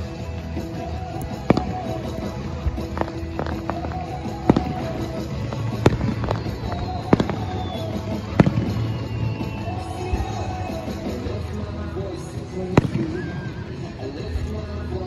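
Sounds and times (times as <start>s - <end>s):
fireworks bursting with loud bangs: 0.0s - 14.5s
music playing: 0.0s - 15.0s
fireworks pops: 1.2s - 11.4s.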